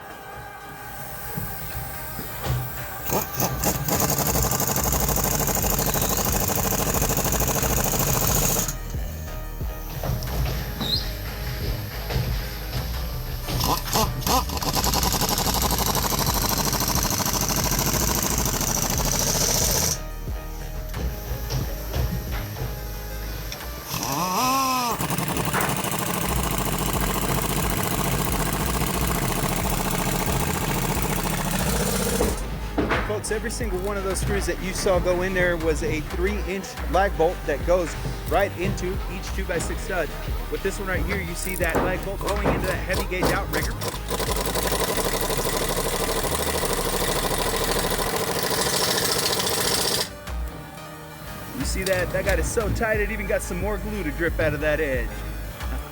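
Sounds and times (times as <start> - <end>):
background music: 0.0 - 55.9
impact driver hammering: 2.5 - 8.9, 13.5 - 20.0, 23.9 - 34.0, 37.7 - 50.2.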